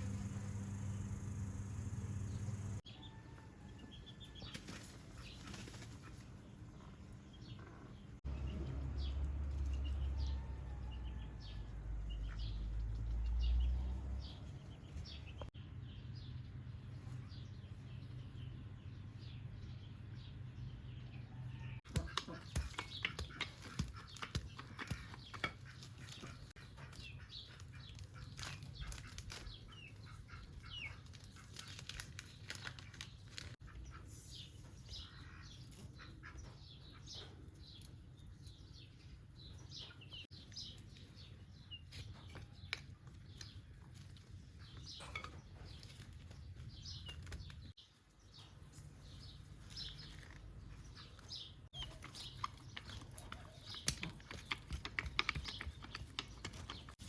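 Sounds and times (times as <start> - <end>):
low steady hum: 0.0 - 2.8
birds chirping: 0.0 - 57.0.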